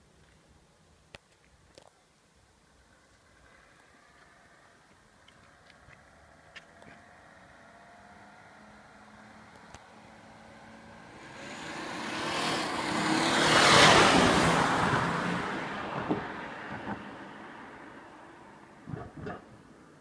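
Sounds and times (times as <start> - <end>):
car driving past: 6.3 - 19.4.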